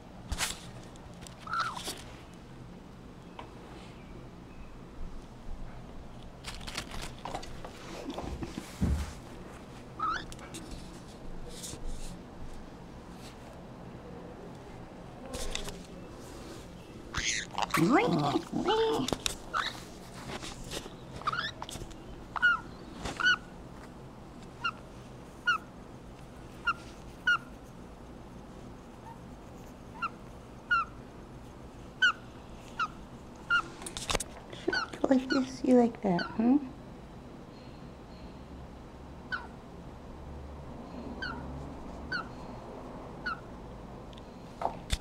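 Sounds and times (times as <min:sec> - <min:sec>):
parrot chirping: 0:01.4 - 0:01.8, 0:10.0 - 0:10.3, 0:17.1 - 0:18.0, 0:19.5 - 0:19.8, 0:21.2 - 0:21.7, 0:22.4 - 0:23.5, 0:25.4 - 0:25.7, 0:26.6 - 0:27.5, 0:29.9 - 0:31.0, 0:32.0 - 0:33.7, 0:39.3 - 0:39.6, 0:41.2 - 0:41.4, 0:42.1 - 0:42.3, 0:43.2 - 0:43.5.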